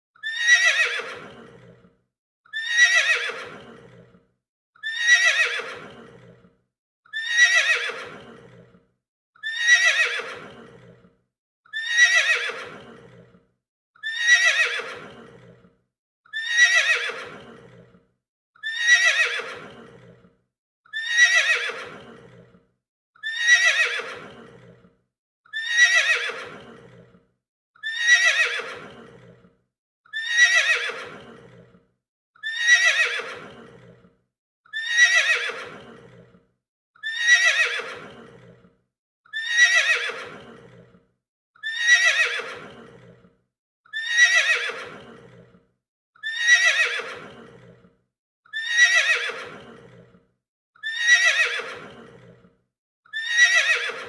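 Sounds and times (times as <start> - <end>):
horse neighing: 0.2 - 1.8, 2.6 - 4.1, 4.8 - 6.4, 7.2 - 8.7, 9.4 - 11.0, 11.8 - 13.3, 16.4 - 17.9, 18.6 - 20.2, 21.0 - 22.5, 23.2 - 24.8, 25.6 - 27.1, 27.9 - 29.4, 30.2 - 31.7, 32.5 - 34.0, 34.8 - 36.3, 37.1 - 38.6, 39.4 - 40.9, 41.7 - 43.2, 44.0 - 45.5, 46.3 - 47.8, 48.6 - 50.1, 50.9 - 52.3, 53.2 - 54.0.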